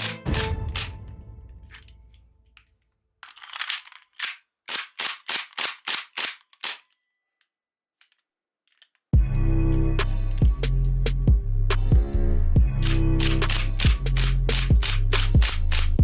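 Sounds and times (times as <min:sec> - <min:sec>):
toy gun firing: 0:00.0 - 0:02.0, 0:03.2 - 0:06.9, 0:12.8 - 0:16.0
music: 0:00.0 - 0:02.3, 0:09.2 - 0:16.0.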